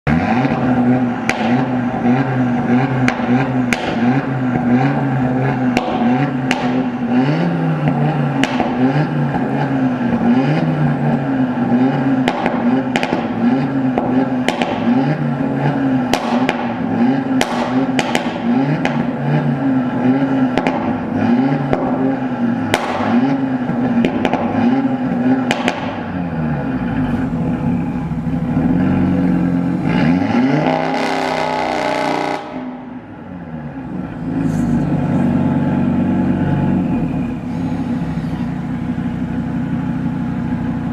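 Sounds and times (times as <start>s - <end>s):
car engine revving: 0.0s - 40.9s
exhaust pops and crackles: 0.4s - 4.7s, 5.6s - 7.1s, 7.8s - 10.3s, 12.2s - 19.6s, 20.5s - 26.1s.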